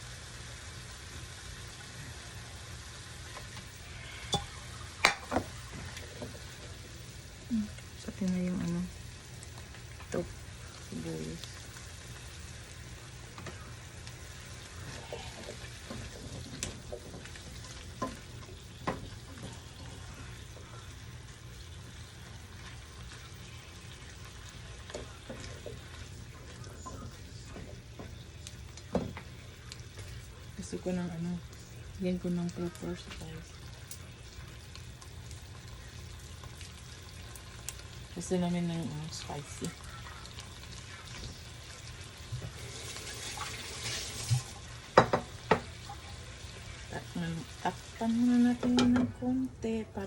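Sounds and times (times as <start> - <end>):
vegetables sizzling in oil: 0.0 - 50.0
sharp knocks on a pot: 4.4 - 5.5, 45.0 - 45.6.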